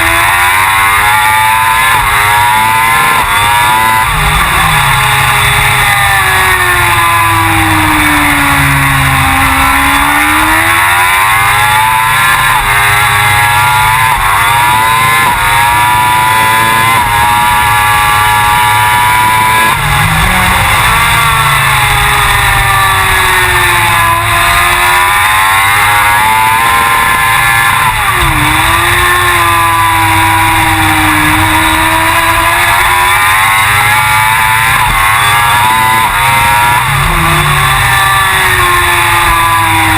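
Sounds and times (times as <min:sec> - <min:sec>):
racing motorcycle engine revving: 0:00.0 - 0:39.9.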